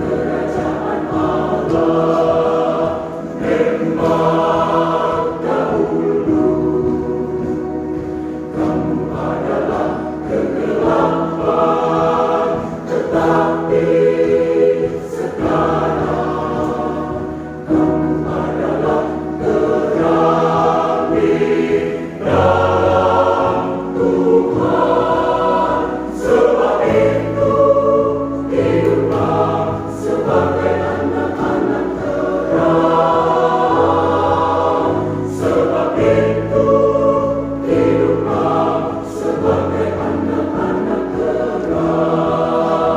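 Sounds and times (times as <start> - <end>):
church choir singing: 0.0 - 42.9.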